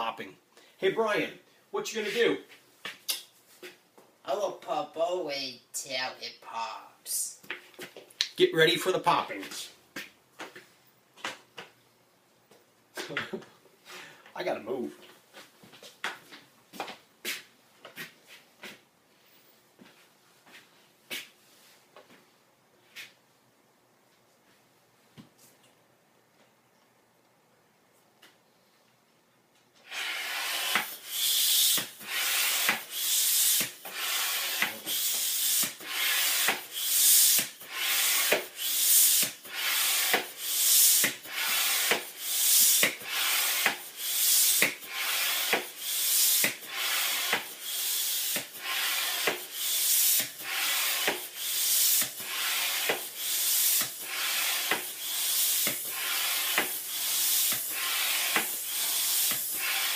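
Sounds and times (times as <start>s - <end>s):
air pump hissing into balloon: 29.8s - 59.9s.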